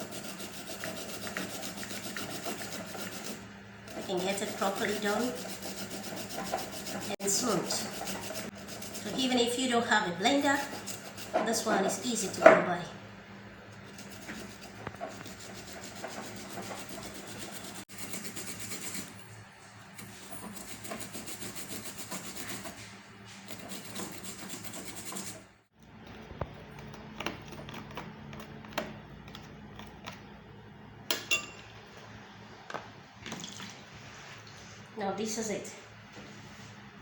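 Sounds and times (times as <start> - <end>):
ginger scraped on a grater: 0.0 - 12.4, 13.8 - 19.2, 20.0 - 25.5.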